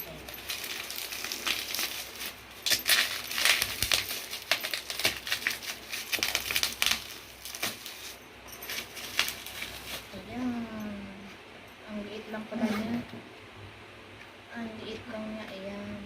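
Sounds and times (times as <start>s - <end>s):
packaging crinkling and rustling: 0.0s - 10.2s.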